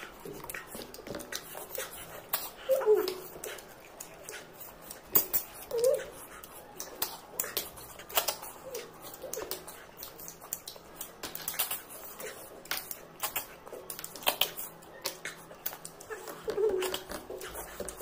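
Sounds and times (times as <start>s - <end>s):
mouth chewing smacks: 0.0s - 18.0s.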